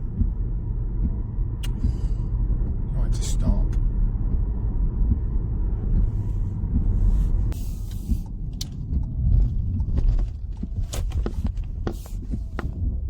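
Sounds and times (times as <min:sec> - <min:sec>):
car cabin rumble: 0:00.0 - 0:13.0.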